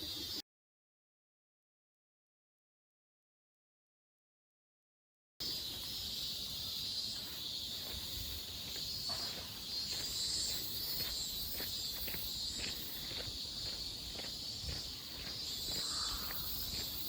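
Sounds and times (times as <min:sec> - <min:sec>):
insects chorus: 0:00.0 - 0:00.4, 0:05.4 - 0:17.0
footsteps walking: 0:07.2 - 0:17.0.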